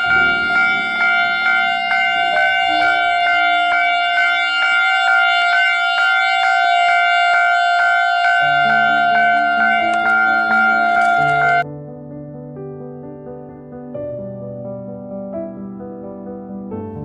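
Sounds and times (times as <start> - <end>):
soft background music: 0.0 - 4.4, 8.4 - 11.8
level crossing warning bell: 0.0 - 11.6.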